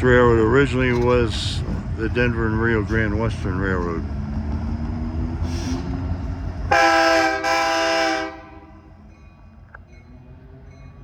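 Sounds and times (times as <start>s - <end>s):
low rumble of diesel engines: 0.0s - 11.0s
locomotive air horn blasts: 6.7s - 8.8s.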